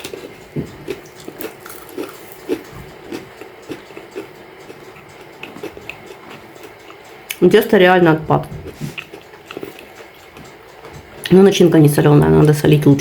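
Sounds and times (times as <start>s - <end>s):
person chewing pastry: 0.0s - 7.4s, 8.6s - 11.2s.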